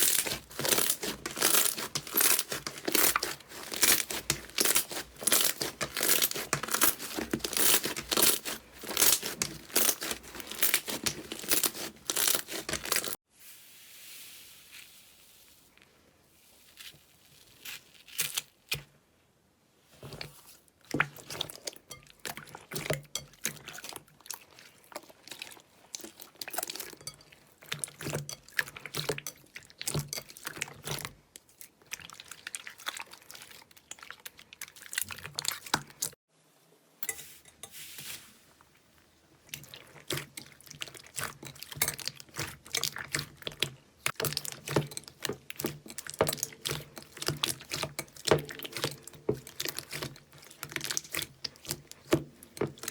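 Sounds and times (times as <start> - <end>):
slime squished by hand: 0.0 - 13.2.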